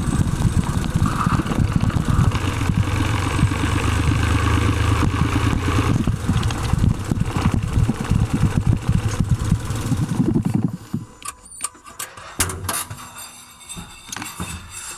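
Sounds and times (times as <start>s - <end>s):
car engine running: 0.0s - 11.2s.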